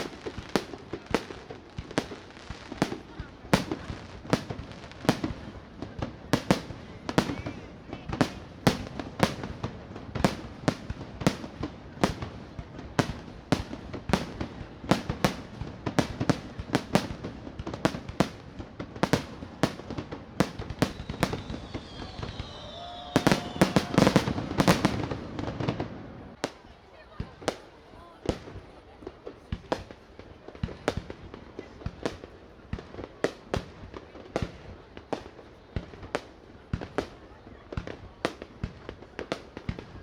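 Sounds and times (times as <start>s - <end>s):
fireworks whistling: 0.0s - 17.2s, 17.8s - 26.6s
fireworks bursting: 0.0s - 40.0s.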